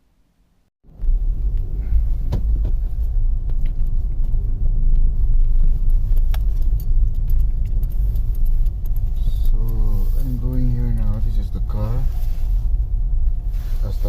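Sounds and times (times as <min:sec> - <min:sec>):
car engine and road noise: 0:00.0 - 0:14.0
light clicks and ticks: 0:04.9 - 0:11.4.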